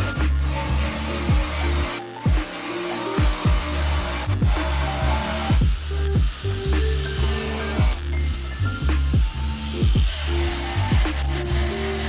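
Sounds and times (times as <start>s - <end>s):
electronic music with heavy bass: 0.0s - 12.0s
deep booming bass hits: 5.5s - 7.0s, 8.8s - 10.2s.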